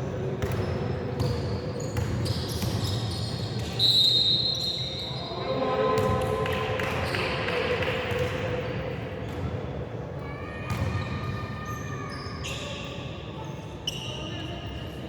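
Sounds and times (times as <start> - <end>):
ball bouncing on a court: 10.7 - 11.4.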